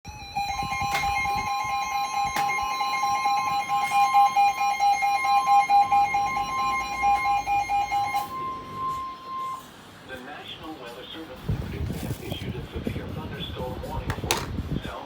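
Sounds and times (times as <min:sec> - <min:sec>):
two-tone alert signal: 0:00.1 - 0:09.7.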